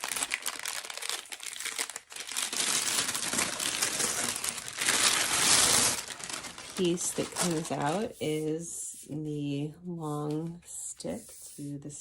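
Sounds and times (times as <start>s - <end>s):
packaging crinkling and rustling: 0.0s - 8.1s.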